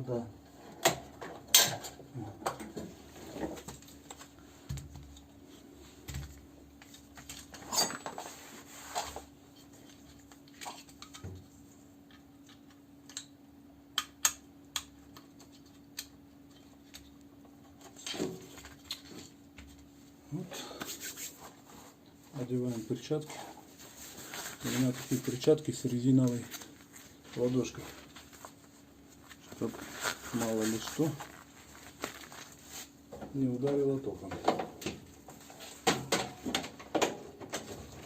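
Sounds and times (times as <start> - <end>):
faint steady hum: 0.0 - 38.0
clicks and rattles of hand work: 0.8 - 5.3, 8.9 - 19.9, 33.1 - 38.0.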